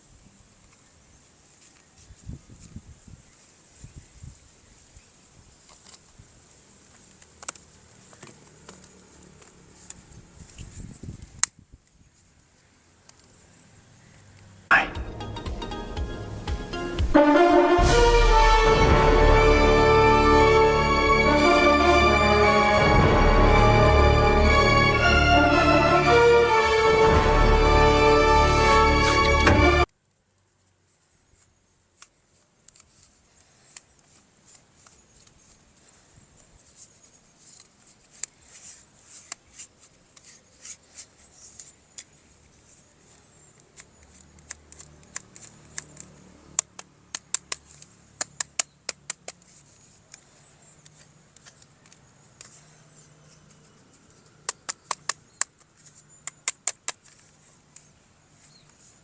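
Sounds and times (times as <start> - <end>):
sharp plastic clicks: 43.6 - 52.6, 53.6 - 57.9.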